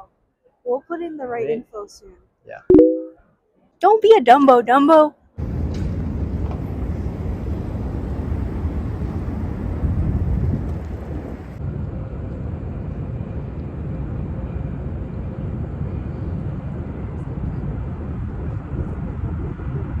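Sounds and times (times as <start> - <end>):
city noise: 3.8 - 19.1
wind on microphone: 5.4 - 11.6, 16.2 - 20.0.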